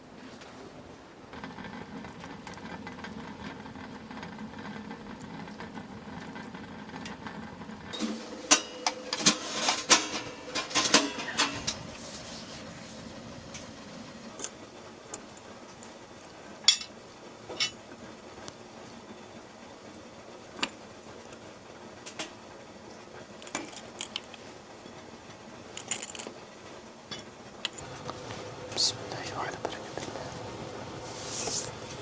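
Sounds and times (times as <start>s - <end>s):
metal cookware clinking: 8.0s - 12.0s, 16.7s - 17.8s
steady background hiss: 8.0s - 32.0s.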